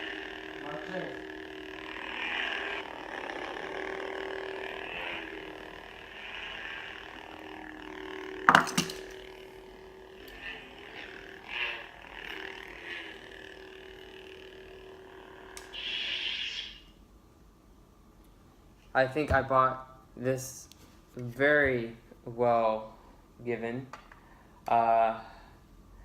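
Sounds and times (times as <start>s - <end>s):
lightsaber electronic hum: 0.0s - 19.2s.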